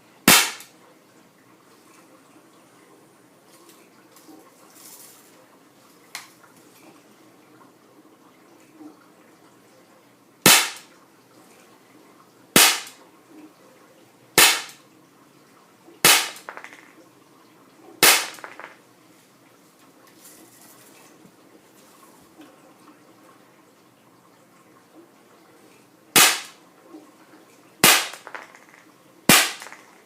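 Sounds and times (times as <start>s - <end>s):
air pistol shots: 0.3s - 0.7s, 10.5s - 10.8s, 12.6s - 13.0s, 14.4s - 14.8s, 16.0s - 16.8s, 18.0s - 18.6s, 26.2s - 26.6s, 27.8s - 28.7s, 29.3s - 29.9s.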